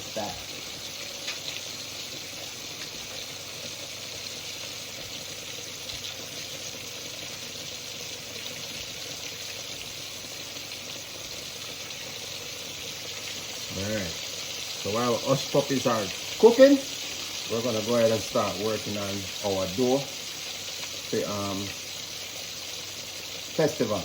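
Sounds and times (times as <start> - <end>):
food sizzling in hot oil: 0.0 - 24.0.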